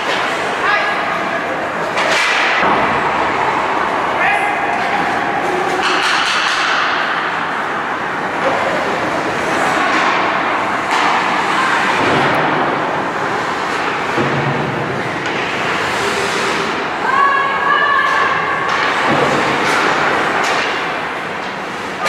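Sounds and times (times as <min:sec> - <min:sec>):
skates scraping ice: 0:08.2 - 0:12.3, 0:13.1 - 0:22.0.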